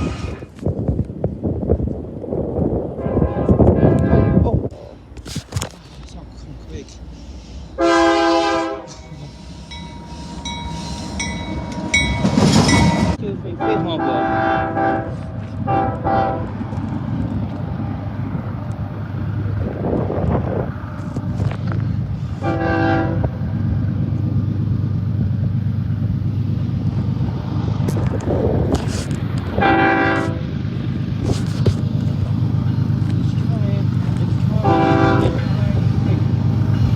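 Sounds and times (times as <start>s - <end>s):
train rumble: 0.0s - 36.9s
locomotive air horn blast: 3.0s - 4.5s, 7.2s - 16.6s, 22.2s - 23.4s, 28.8s - 30.6s, 34.5s - 35.6s
high ringing: 7.8s - 13.2s.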